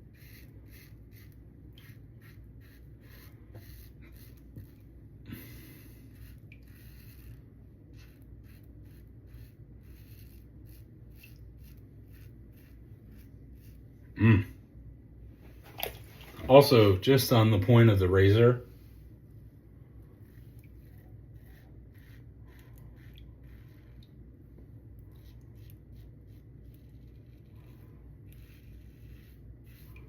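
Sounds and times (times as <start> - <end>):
razor scraping stubble: 0.0 - 14.1, 20.1 - 24.0, 25.1 - 30.0.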